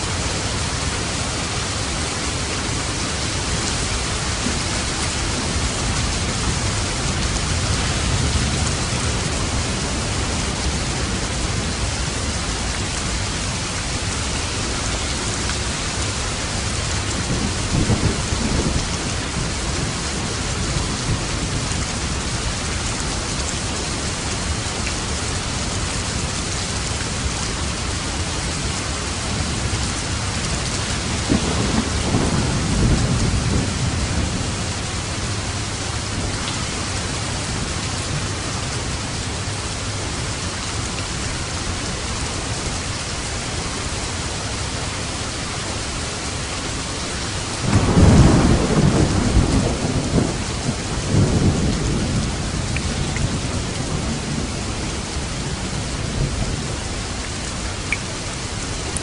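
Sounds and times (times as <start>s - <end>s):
heavy rain hissing: 0.0s - 59.0s
thunder rumbling: 2.7s - 14.6s, 15.9s - 22.5s, 28.2s - 35.6s, 47.6s - 57.3s.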